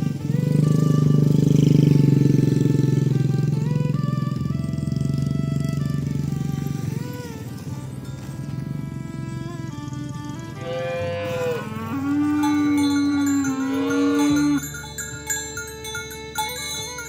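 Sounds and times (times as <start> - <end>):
ox mooing: 4.7 - 15.4
background music with chimes: 6.8 - 17.0.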